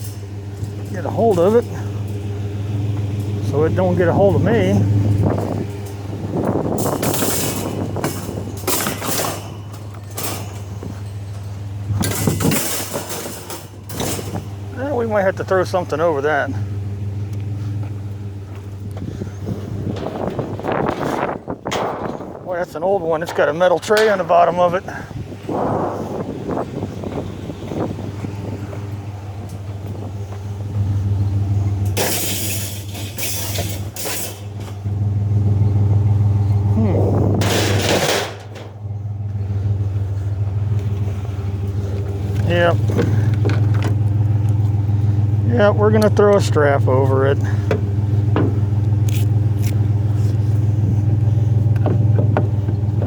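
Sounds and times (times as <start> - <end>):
bursts of rough noise: 0.0 - 53.0
low engine hum: 0.0 - 53.0
wire cage rattling and scraping: 0.0 - 53.0.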